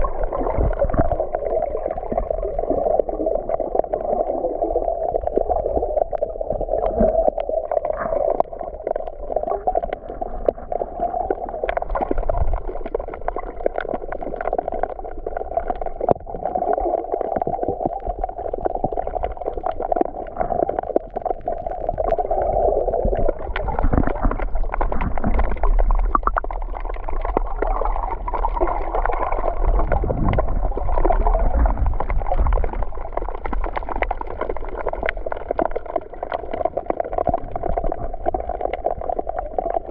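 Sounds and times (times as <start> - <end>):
muffled water gurgling and sloshing: 0.0 - 39.9
low rumble: 29.3 - 33.2.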